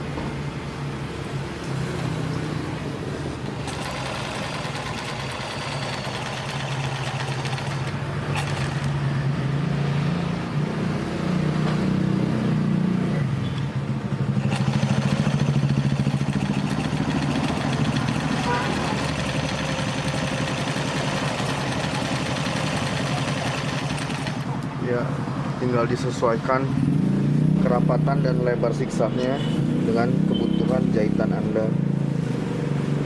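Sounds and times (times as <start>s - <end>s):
sewing machine running: 3.2s - 9.0s, 14.3s - 24.6s.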